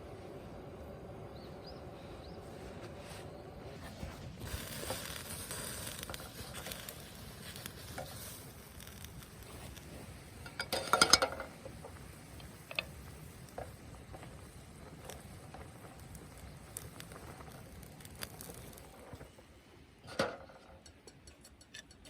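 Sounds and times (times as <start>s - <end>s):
camp cookware scraping: 2.6s - 19.4s, 20.0s - 22.0s.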